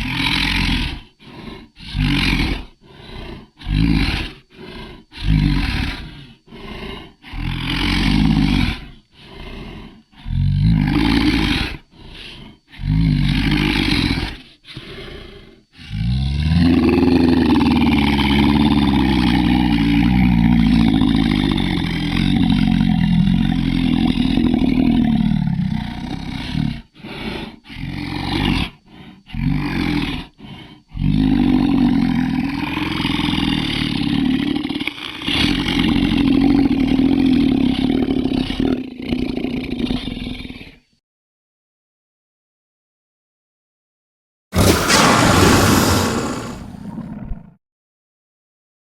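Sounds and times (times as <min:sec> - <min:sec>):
deep growling monster roars: 0:16.3 - 0:25.2, 0:44.6 - 0:47.6.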